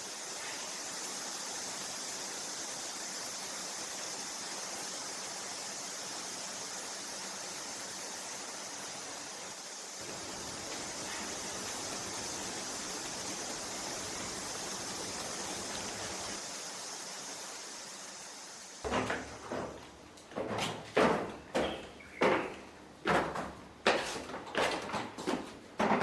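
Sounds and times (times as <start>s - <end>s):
steady high hiss: 0.0s - 20.3s
sharp knocks and bangs: 18.8s - 26.0s.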